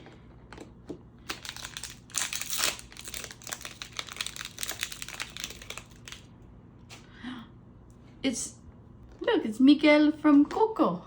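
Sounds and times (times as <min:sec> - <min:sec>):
packaging crinkling: 0:00.6 - 0:06.3.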